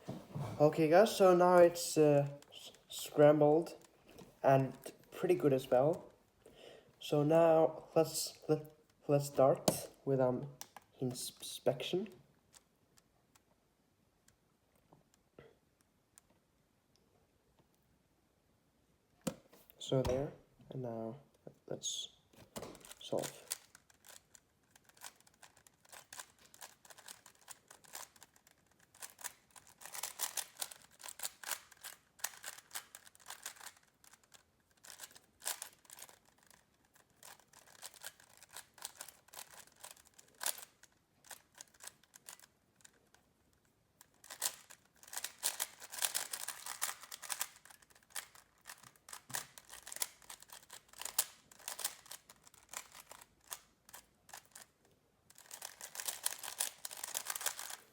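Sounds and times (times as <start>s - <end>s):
puzzle cube clicking: 9.3s - 10.0s, 22.5s - 54.7s, 55.3s - 57.8s.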